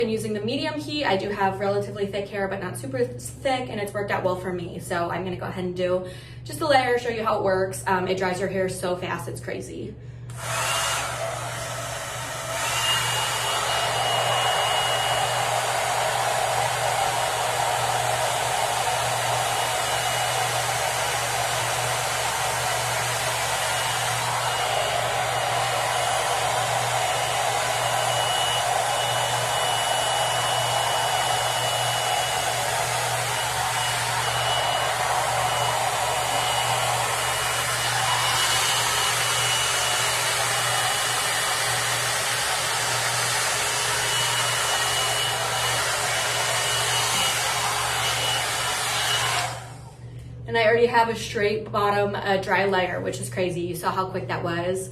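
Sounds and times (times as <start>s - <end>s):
hair dryer brush running: 10.3s - 50.1s.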